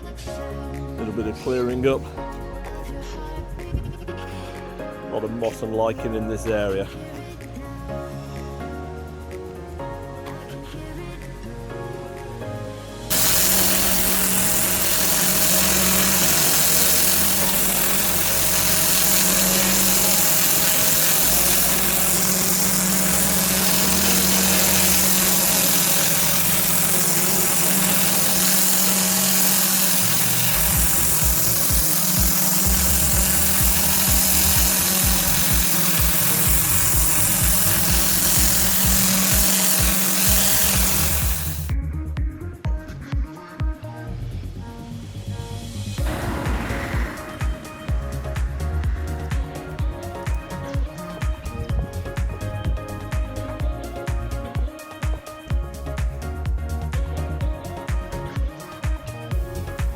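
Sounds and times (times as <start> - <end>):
machine hum: 13.1 - 41.7, 46.0 - 54.8
pressure washer jet hissing: 13.1 - 41.7, 46.0 - 59.9.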